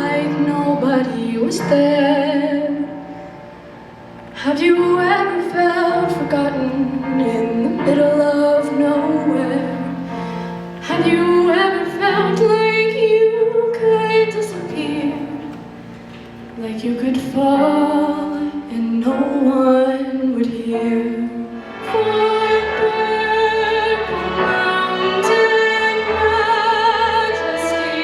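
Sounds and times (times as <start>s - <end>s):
instrumental accompaniment: 0.0s - 28.0s
woman singing with vibrato: 10.8s - 15.4s, 16.6s - 28.0s.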